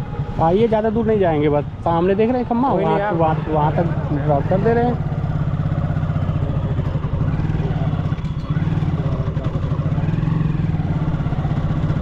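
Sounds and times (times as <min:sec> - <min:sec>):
motorcycle engine running: 0:01.0 - 0:12.0.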